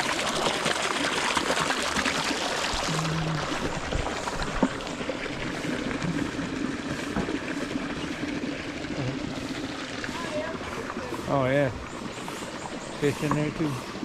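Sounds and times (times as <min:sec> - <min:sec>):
running water: 0:00.0 - 0:14.0.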